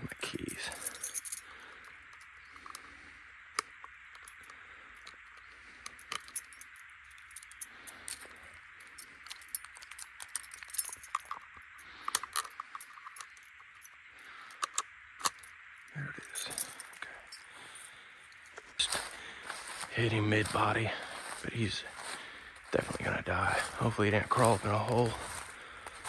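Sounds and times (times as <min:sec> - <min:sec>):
keys jangling: 0:00.4 - 0:01.4, 0:06.0 - 0:11.4, 0:16.2 - 0:17.4
small metallic clicks: 0:00.4 - 0:19.9.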